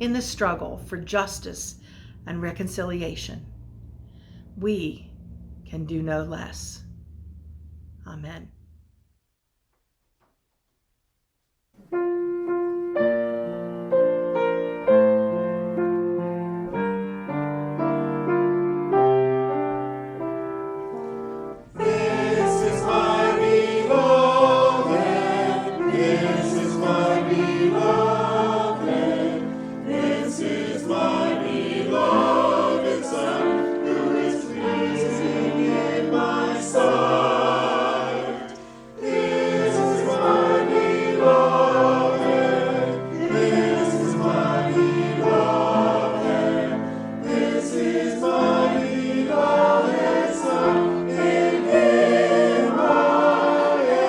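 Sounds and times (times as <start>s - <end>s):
musical accompaniment: 11.8s - 54.0s
choir singing a hymn: 17.7s - 54.0s.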